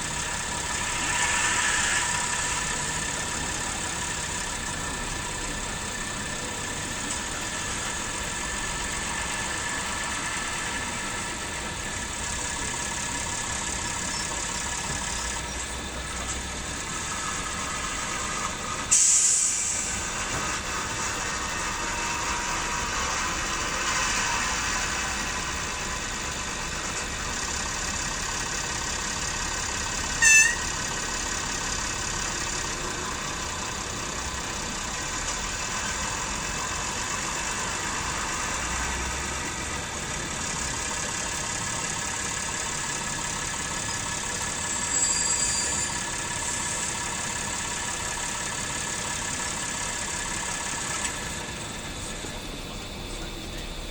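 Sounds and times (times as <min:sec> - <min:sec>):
diesel engine sound from small speaker: 0:00.0 - 0:53.9
loud high toot: 0:30.1 - 0:30.8.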